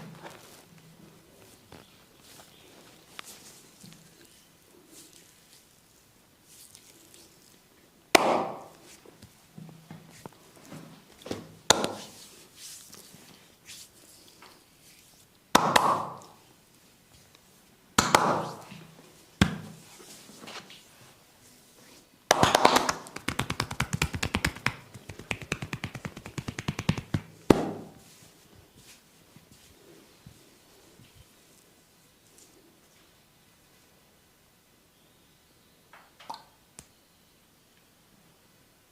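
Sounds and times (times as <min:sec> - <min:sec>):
hands slapping body: 0:08.2 - 0:08.8, 0:11.7 - 0:12.2, 0:15.6 - 0:16.4, 0:18.0 - 0:18.7, 0:22.3 - 0:28.0
rhythmic percussive massage tapping: 0:22.3 - 0:27.9.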